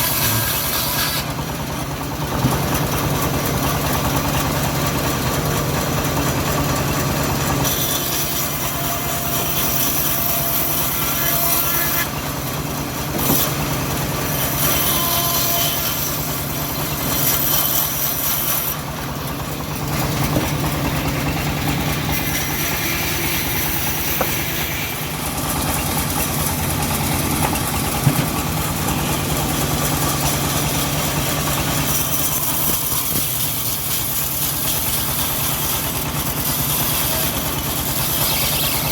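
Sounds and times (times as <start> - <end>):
engine hum: 0.0 - 7.7, 16.0 - 38.9
bandsaw blade sawing through log: 0.0 - 38.9.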